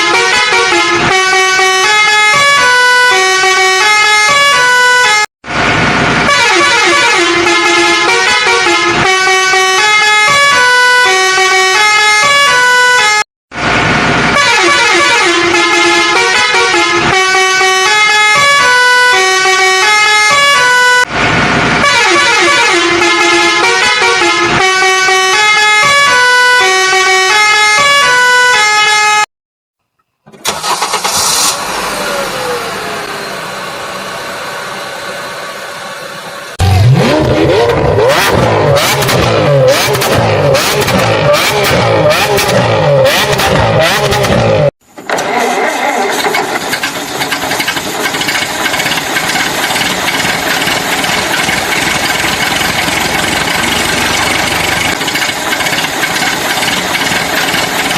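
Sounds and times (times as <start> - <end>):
musical vehicle horn tune: 0.0 - 5.3, 6.3 - 13.2, 14.4 - 21.1, 21.8 - 29.3, 36.6 - 44.7
vehicle sound with falling tone: 29.9 - 57.9.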